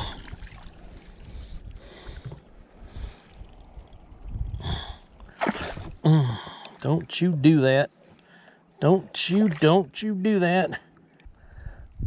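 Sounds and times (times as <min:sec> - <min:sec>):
water sloshing against kayak hull: 0:00.0 - 0:07.1, 0:07.9 - 0:09.9.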